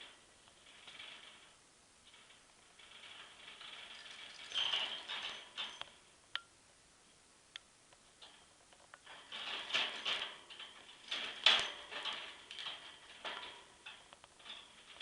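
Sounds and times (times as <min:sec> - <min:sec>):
clicks on cage wire: 0:08.2 - 0:15.0.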